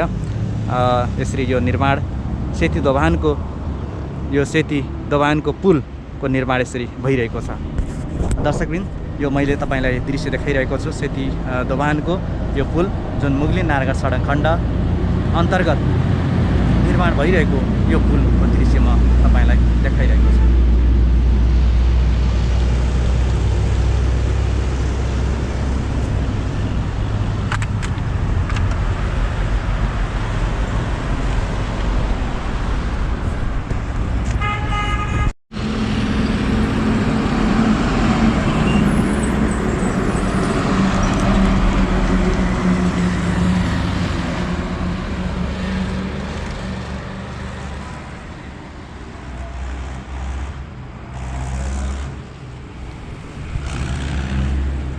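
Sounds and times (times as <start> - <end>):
highway traffic passing: 0.0 - 54.9
vehicle horn toot: 34.4 - 35.3
vehicle engine passing close: 35.5 - 54.9.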